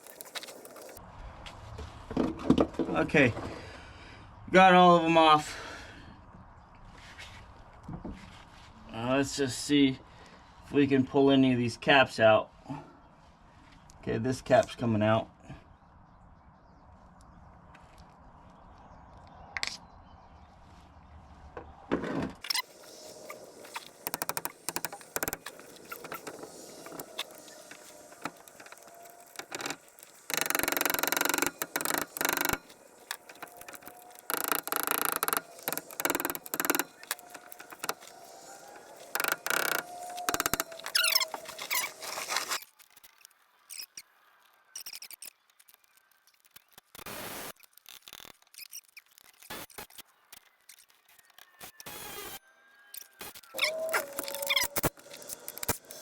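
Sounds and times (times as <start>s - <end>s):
metal squealing and scraping: 22.4s - 42.6s, 52.9s - 56.0s.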